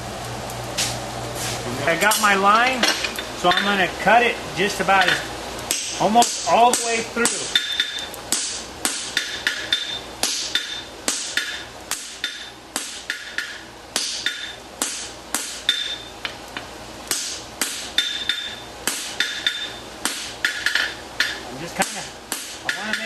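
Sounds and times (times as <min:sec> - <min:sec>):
hammer striking metal on anvil: 0:06.7 - 0:16.0, 0:17.1 - 0:21.4.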